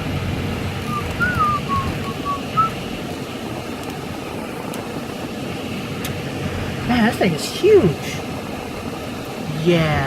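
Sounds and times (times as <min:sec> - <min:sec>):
car driving rumble: 0:00.0 - 0:10.0
person whistling a tune: 0:00.9 - 0:02.7.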